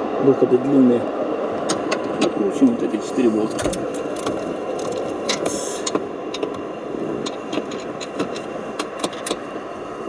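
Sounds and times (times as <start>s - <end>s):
steady mechanical hum: 0.0s - 10.0s
socket wrench clicking: 3.6s - 9.4s.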